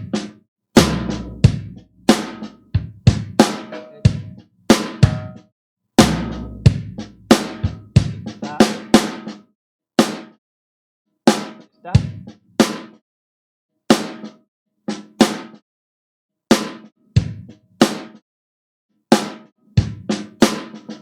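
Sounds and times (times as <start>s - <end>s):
electronic drum pattern: 0.8s - 5.4s, 6.0s - 9.1s.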